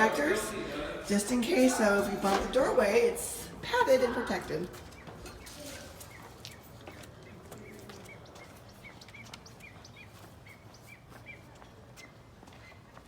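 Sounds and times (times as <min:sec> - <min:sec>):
low background noise: 0:00.0 - 0:13.0
bird chirping: 0:04.8 - 0:12.9.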